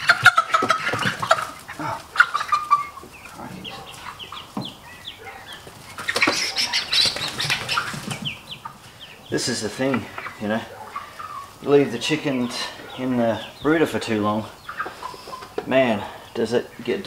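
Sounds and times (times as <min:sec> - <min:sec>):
rustling and scuffling: 0:00.0 - 0:10.8
chicks peeping: 0:00.0 - 0:17.0.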